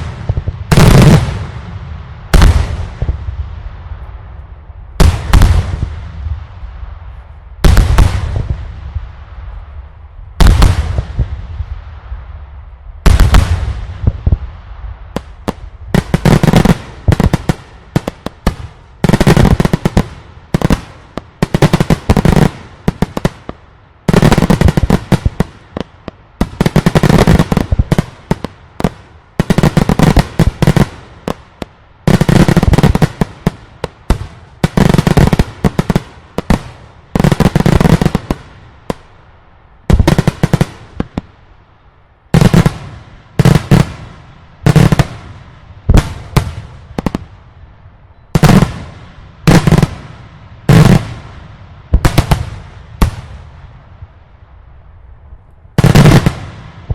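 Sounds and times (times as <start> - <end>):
fireworks bangs and crackling: 0.0 - 41.6, 42.3 - 47.6, 48.3 - 54.2, 55.7 - 56.9.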